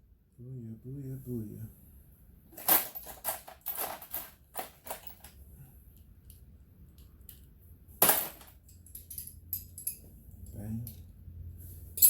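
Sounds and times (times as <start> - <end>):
tools and metal parts scraping: 2.6 - 5.4, 8.2 - 11.0.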